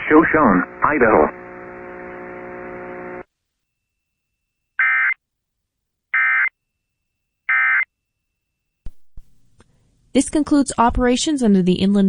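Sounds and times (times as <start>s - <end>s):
steady hum: 0.0s - 3.3s.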